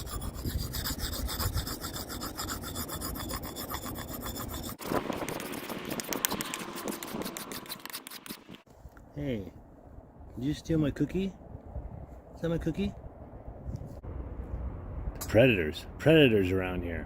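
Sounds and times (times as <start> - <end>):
blade rasping on sharpening stone: 0.0 - 8.4.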